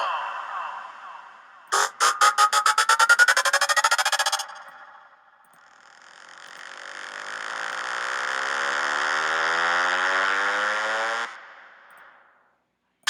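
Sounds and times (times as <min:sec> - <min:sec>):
rapidly pulsing effect: 0:00.0 - 0:07.2
buzzy tone rising in pitch: 0:01.7 - 0:05.2, 0:06.7 - 0:11.2.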